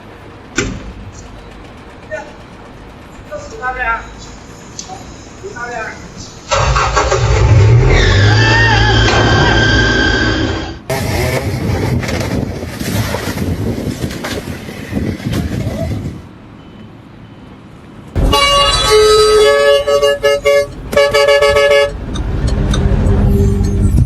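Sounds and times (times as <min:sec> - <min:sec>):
rough noisy rattling: 0:00.0 - 0:15.4
vehicle horn honking: 0:18.2 - 0:22.0.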